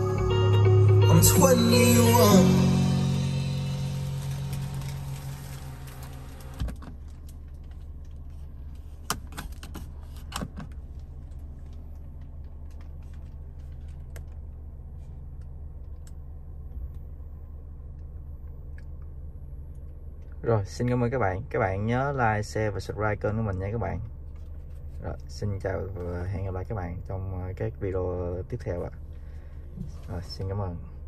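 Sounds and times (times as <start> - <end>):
music: 0.0 - 6.0
steady low hum: 0.0 - 31.0.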